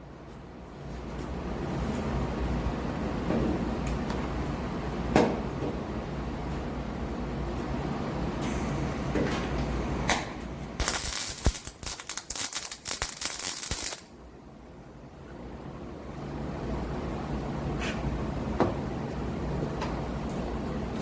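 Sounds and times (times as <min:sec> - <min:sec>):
steady low hum: 0:00.0 - 0:21.0
welding arc crackling: 0:10.8 - 0:14.1.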